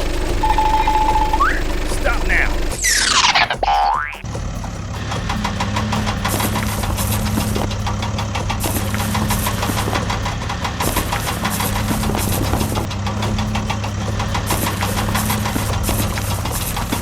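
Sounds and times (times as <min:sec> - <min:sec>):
engine running with knocking chatter: 0:00.0 - 0:17.0.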